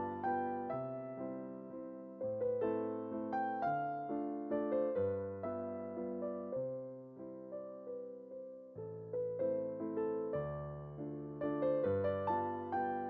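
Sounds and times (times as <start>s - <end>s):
gentle piano piece: 0.0s - 13.0s.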